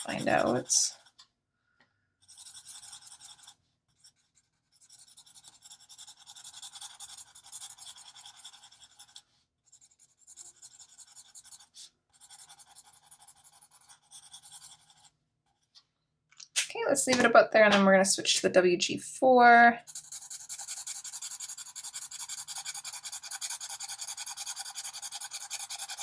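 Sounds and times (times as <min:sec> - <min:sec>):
marker scratching on paper: 0:00.0 - 0:01.2, 0:02.2 - 0:15.7, 0:19.8 - 0:26.0.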